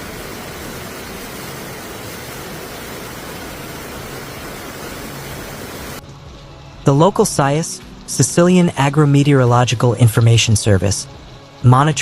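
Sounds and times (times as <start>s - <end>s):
floodwater rushing: 0.0s - 6.0s
heavy rain rushing: 0.0s - 6.0s.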